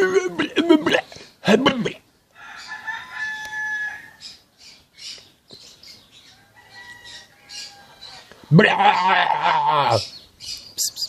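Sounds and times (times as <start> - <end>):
bird calling: 9.8 - 11.0.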